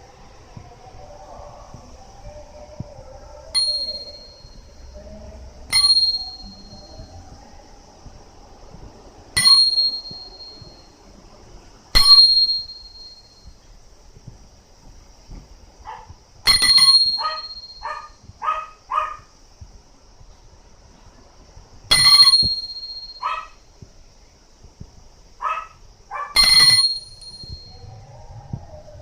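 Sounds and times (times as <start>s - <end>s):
metal bell clang: 3.6s - 4.7s, 5.7s - 6.9s, 9.4s - 10.9s, 12.0s - 13.4s, 16.5s - 18.0s, 21.9s - 23.4s, 26.4s - 27.9s
dog barking: 15.9s - 16.1s, 17.2s - 19.3s, 23.2s - 23.6s, 25.4s - 26.4s.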